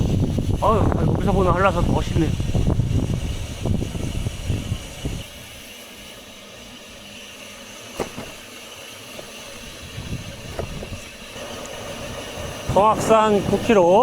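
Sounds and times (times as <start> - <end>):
bicycle rolling with wind rush: 0.0 - 14.0.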